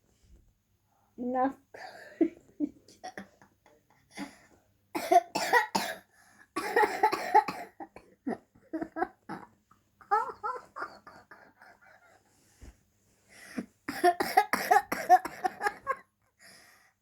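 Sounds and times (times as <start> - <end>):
girl coughing: 5.0 - 11.4, 13.9 - 16.0.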